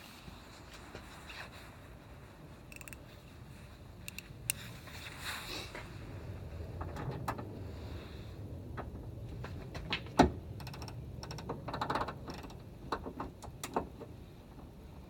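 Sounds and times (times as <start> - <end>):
wrench clicks and knocks: 2.7 - 3.0, 10.6 - 12.6.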